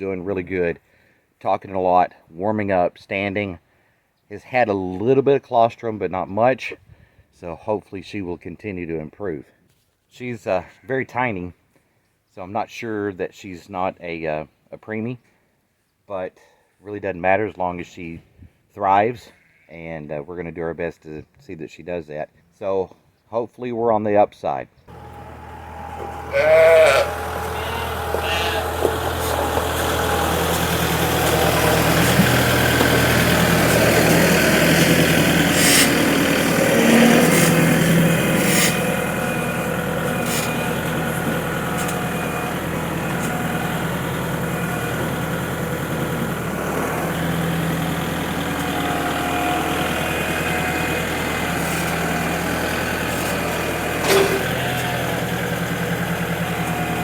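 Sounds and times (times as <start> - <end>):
tractor engine idling: 24.9 - 57.0.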